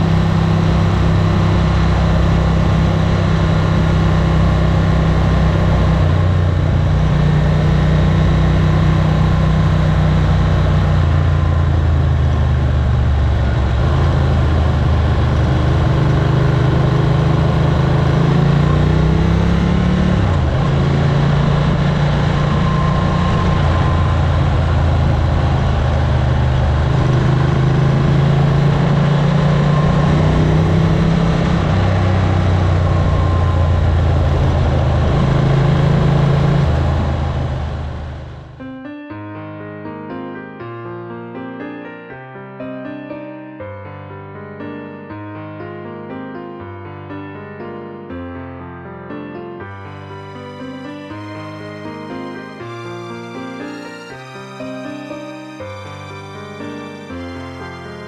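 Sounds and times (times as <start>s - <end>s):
motorcycle engine idling: 9.6s - 18.8s.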